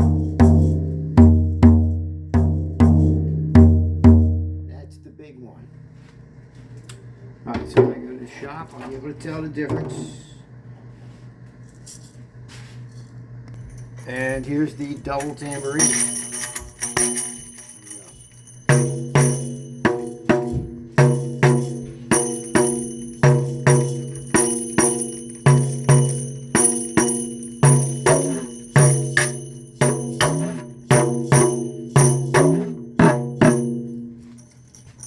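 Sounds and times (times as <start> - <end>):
tambourine playing: 13.6 - 35.0.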